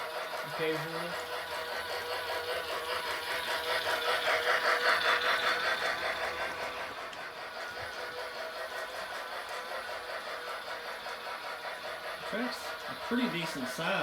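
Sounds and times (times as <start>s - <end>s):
toy motor hum: 0.0s - 14.0s
toy train sounds pulsing: 0.0s - 14.0s.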